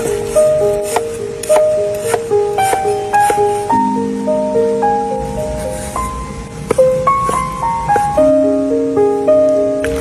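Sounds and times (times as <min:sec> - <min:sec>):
slow piano melody: 0:00.0 - 0:10.0.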